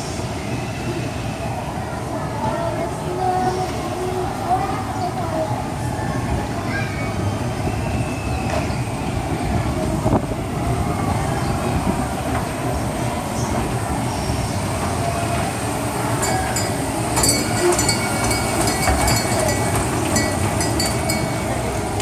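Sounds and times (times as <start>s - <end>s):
ride train rumbling on track: 0.0s - 22.0s
metallic clinking: 16.2s - 22.0s
thin squealing tones: 16.2s - 22.0s.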